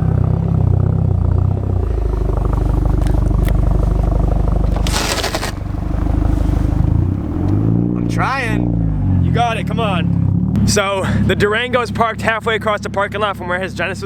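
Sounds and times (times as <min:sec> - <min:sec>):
car engine under load: 0:00.3 - 0:09.2.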